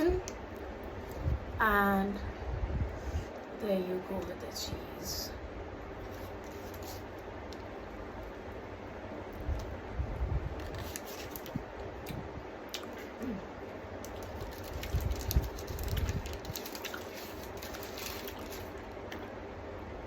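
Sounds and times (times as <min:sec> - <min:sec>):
person chewing food: 0:12.0 - 0:19.3.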